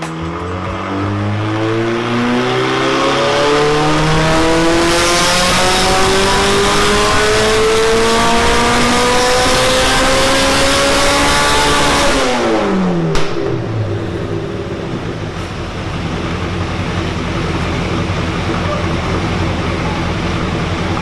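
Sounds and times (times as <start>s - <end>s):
car engine revving at full throttle: 0.0s - 21.0s.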